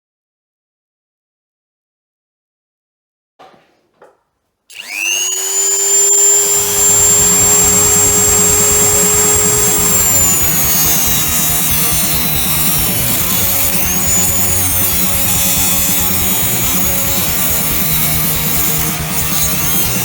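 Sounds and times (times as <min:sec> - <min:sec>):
angle grinder motor whine: 0:04.7 - 0:20.0.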